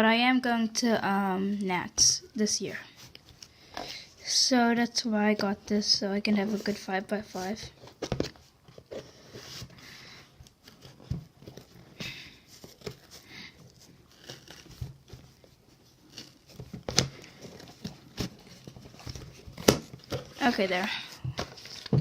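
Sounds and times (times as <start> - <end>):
packaging crinkling and rustling: 10.4 - 22.0.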